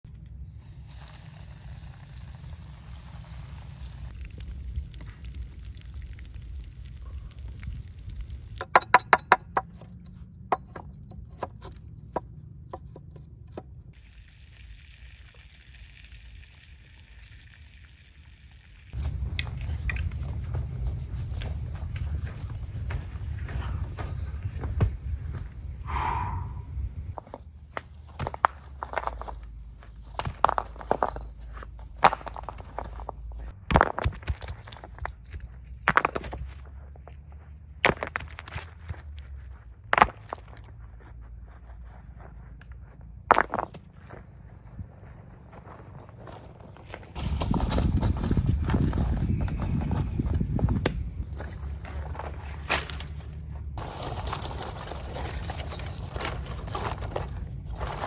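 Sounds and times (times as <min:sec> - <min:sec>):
steady low rumble: 0:18.9 - 0:27.2
crunching and rustling: 0:27.1 - 0:58.0.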